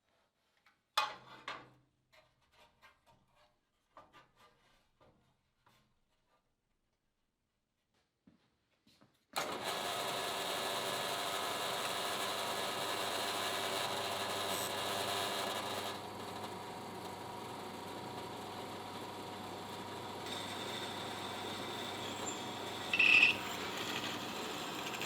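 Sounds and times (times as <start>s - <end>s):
power tool on sheet metal: 9.4s - 16.5s, 20.2s - 25.0s.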